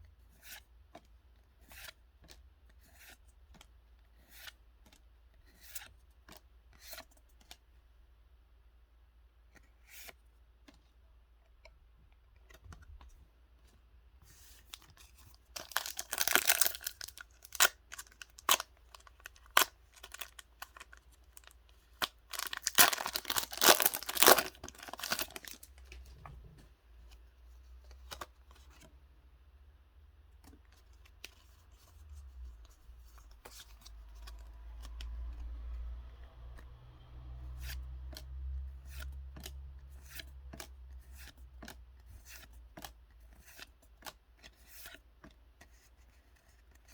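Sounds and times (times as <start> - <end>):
clicks and rustles of handling: 9.5 - 29.0
card packaging tearing: 15.5 - 25.7.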